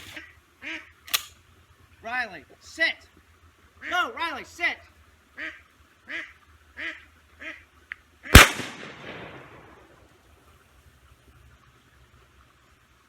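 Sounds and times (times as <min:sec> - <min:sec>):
ducks quacking: 0:00.1 - 0:01.0, 0:05.4 - 0:07.7
shotgun blast with echo: 0:08.4 - 0:09.9.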